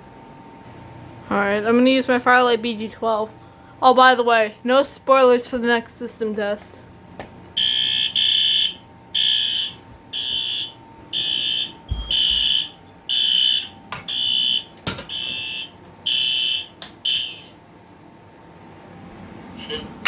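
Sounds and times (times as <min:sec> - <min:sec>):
smoke detector alarm beeping: 0:07.6 - 0:17.6.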